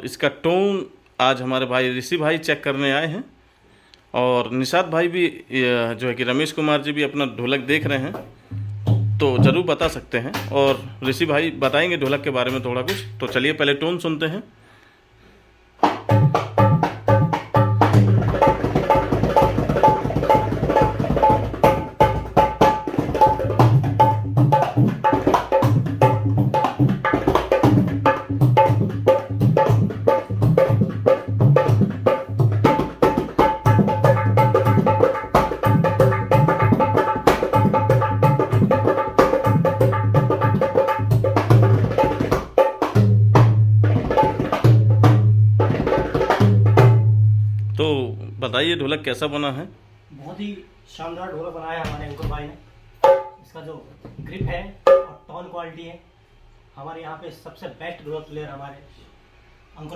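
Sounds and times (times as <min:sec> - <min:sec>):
hand drum rhythm: 0:07.9 - 0:13.6, 0:15.8 - 0:47.2.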